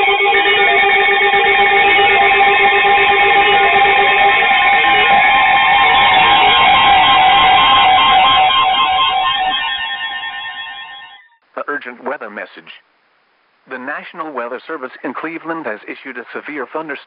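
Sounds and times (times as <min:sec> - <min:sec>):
weather alert radio tones: 0:00.0 - 0:11.0
rising electronic sweep: 0:00.0 - 0:11.3.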